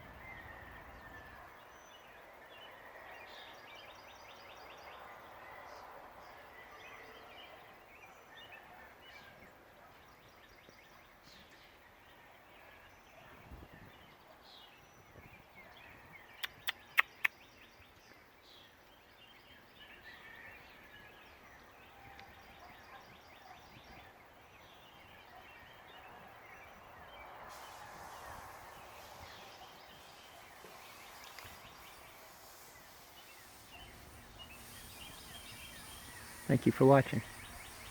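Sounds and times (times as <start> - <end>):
small birds chirping: 13.1 - 20.4, 21.0 - 37.9.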